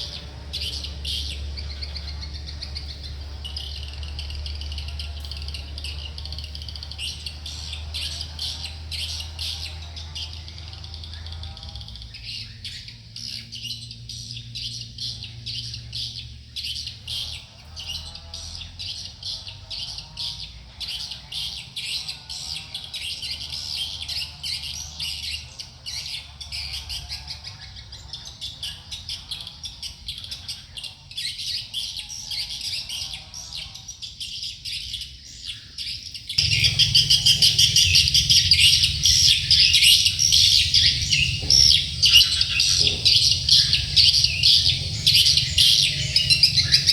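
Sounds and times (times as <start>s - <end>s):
bird chirping rapidly: 36.4s - 46.9s.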